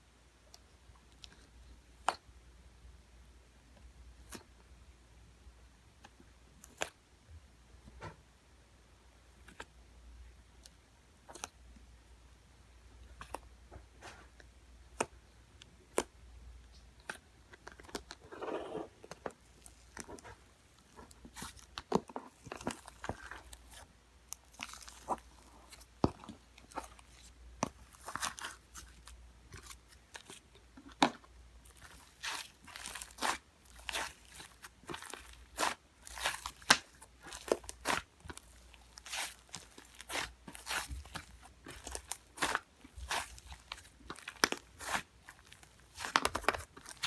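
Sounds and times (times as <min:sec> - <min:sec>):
fingers squishing clay slime: 0:05.9 - 0:07.0, 0:13.0 - 0:47.0.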